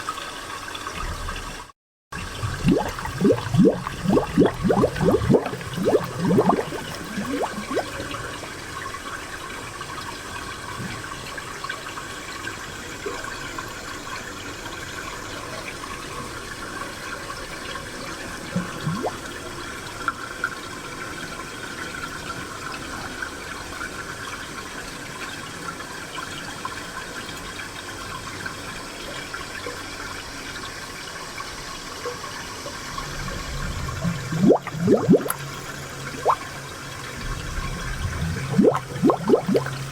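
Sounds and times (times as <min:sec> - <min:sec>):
water bubbling and gurgling: 0:00.8 - 0:09.8, 0:18.4 - 0:19.6, 0:32.4 - 0:39.9
spring water trickling: 0:02.2 - 0:09.8, 0:18.6 - 0:19.4, 0:32.3 - 0:39.9.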